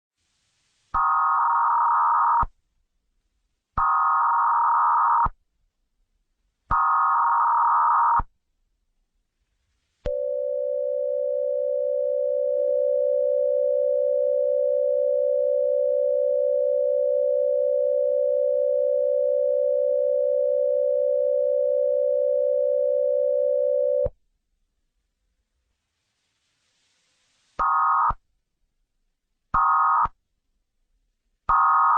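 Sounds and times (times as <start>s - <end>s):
steady low dual tone: 10.1s - 24.0s.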